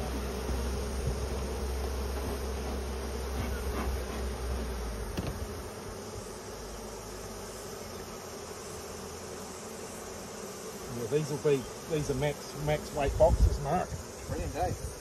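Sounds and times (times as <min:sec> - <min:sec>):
bees buzzing: 0:00.0 - 0:15.0
brief knock: 0:05.2 - 0:05.4.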